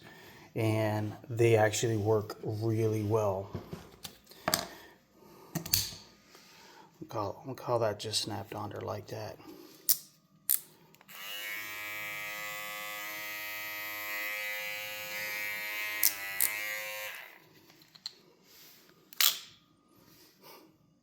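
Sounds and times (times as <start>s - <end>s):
hair clipper motor buzzing: 11.1s - 17.4s
hair clipper switch click: 15.1s - 17.3s.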